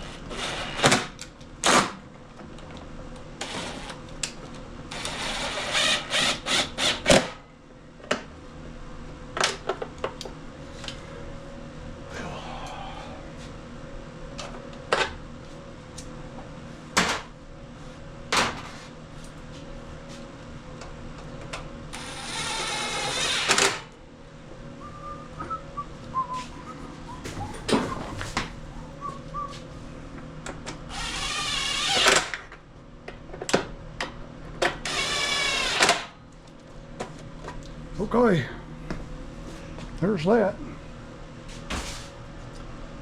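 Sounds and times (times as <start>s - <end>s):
rasping mechanical sound: 22.0s - 23.9s.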